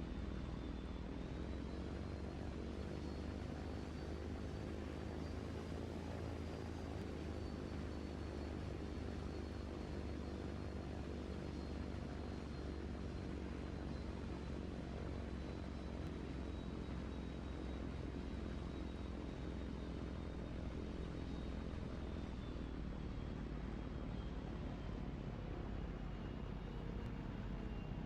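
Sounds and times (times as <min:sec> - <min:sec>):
low engine drone: 0:00.0 - 0:28.0.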